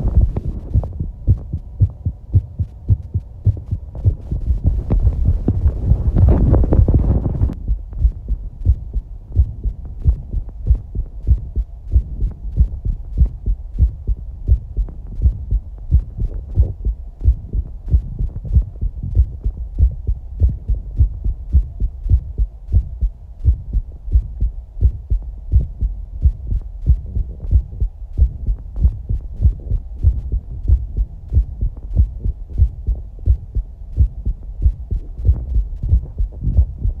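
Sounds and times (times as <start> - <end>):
heartbeat thumps: 0.0 - 37.0.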